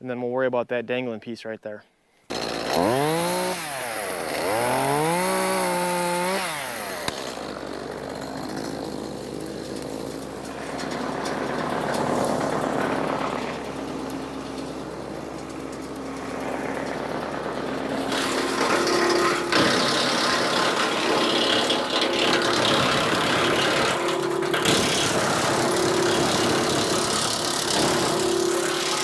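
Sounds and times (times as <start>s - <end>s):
chainsaw revving and cutting: 2.3s - 29.0s.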